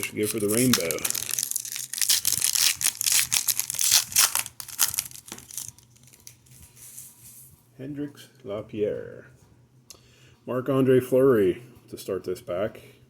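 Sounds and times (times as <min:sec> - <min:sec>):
wrapper crinkling and tearing: 0:00.0 - 0:06.5.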